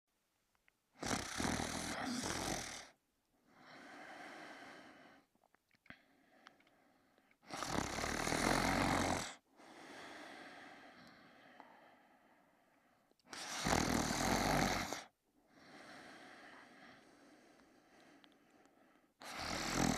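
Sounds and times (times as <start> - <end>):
person snoring: 1.0 - 5.2, 7.4 - 11.9, 13.3 - 18.3, 19.2 - 19.9
quiet breath: 1.2 - 7.9, 8.6 - 19.9.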